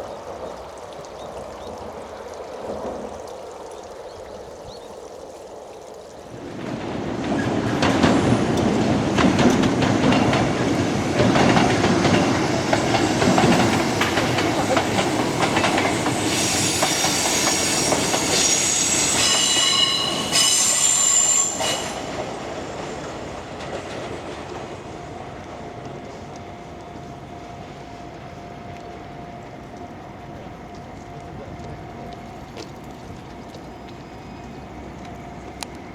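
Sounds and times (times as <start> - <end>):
train rumbling on rails: 6.3 - 35.9
wheel squeal: 14.6 - 22.3.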